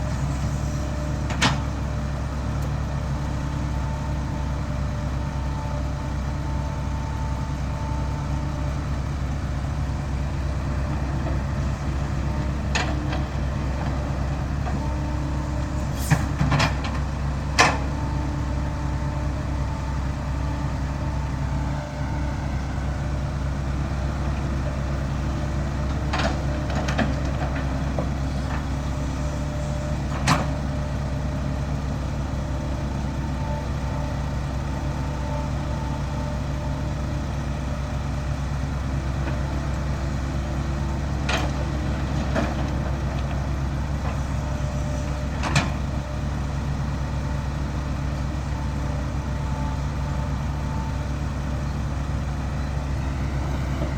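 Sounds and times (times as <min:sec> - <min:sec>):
diesel engine running: 0:00.0 - 0:53.9
sharp clunks and rattles: 0:16.0 - 0:18.1, 0:25.8 - 0:28.8.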